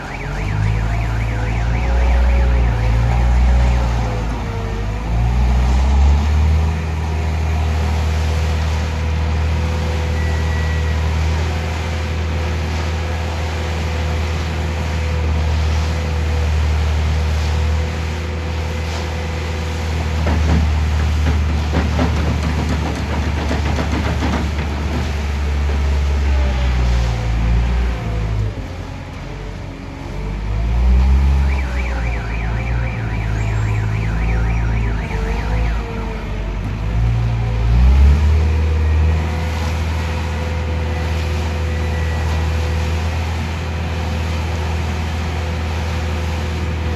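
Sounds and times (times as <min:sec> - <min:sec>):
warbling warning alarm: 0:00.0 - 0:04.3, 0:31.2 - 0:36.3
diesel engine droning: 0:00.0 - 0:46.9.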